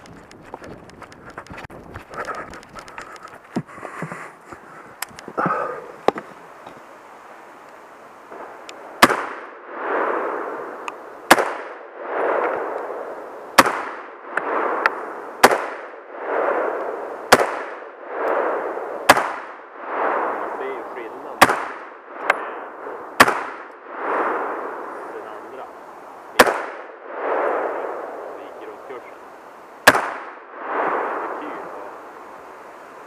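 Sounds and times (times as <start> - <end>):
hiss after shots: 2.2 - 33.0
faint clicks: 4.5 - 6.8
rifle shots: 8.4 - 20.6, 21.4 - 24.9, 26.4 - 28.3, 29.8 - 31.7.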